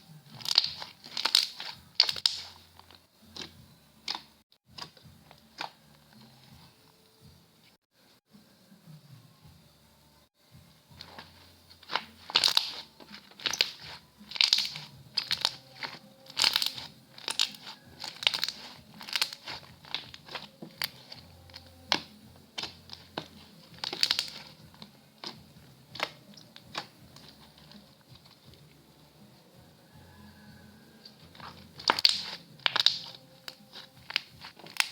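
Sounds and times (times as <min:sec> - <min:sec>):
slime clicks and pops: 0:31.9 - 0:33.1.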